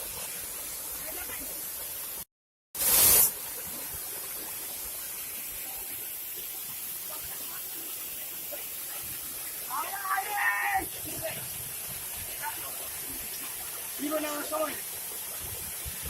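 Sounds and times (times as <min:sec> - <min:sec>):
burst of hissing noise: 0:02.8 - 0:03.5
waterfall rushing: 0:05.4 - 0:16.0.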